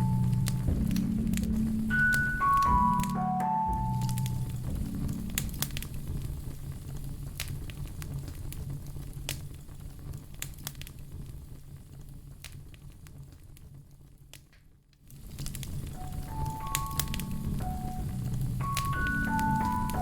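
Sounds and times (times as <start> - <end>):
low rumble: 0.0 - 10.2, 15.6 - 20.0
wood fire crackling: 0.0 - 20.0
sharp snaps and pops: 3.8 - 20.0.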